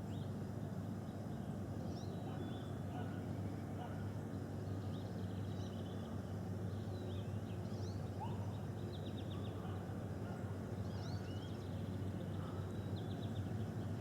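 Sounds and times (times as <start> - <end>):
small birds chirping: 4.8 - 14.0.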